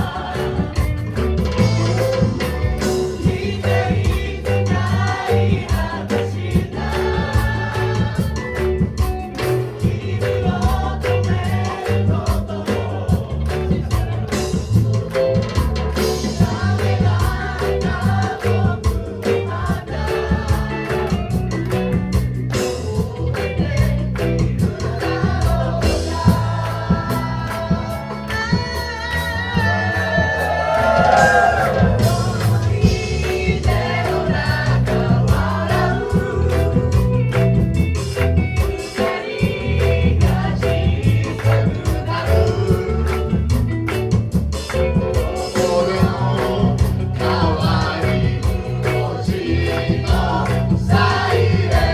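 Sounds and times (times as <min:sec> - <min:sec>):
group of voices singing: 0:00.0 - 0:51.9
live band playing: 0:00.0 - 0:51.9.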